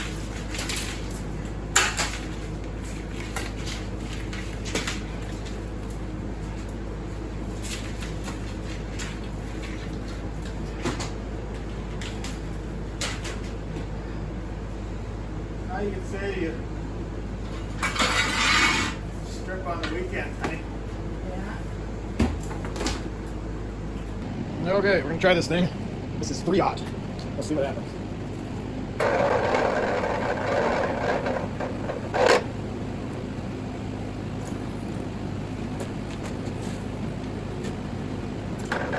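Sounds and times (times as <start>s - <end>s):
steady low hum: 0.0s - 38.9s
wire-stripping machine grinding: 29.0s - 32.6s, 38.6s - 38.9s.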